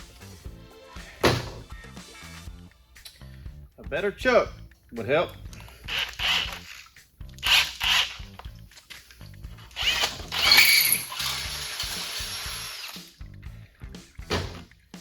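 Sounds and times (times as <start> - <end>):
drill bit slipping in chuck: 5.6 - 8.4, 9.8 - 13.1
power drill running: 5.9 - 6.7, 7.4 - 8.2, 9.8 - 13.1.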